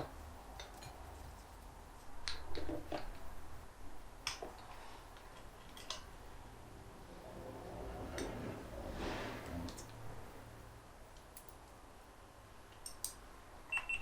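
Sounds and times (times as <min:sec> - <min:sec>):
metal clicks and taps of bolts: 0:12.7 - 0:13.2.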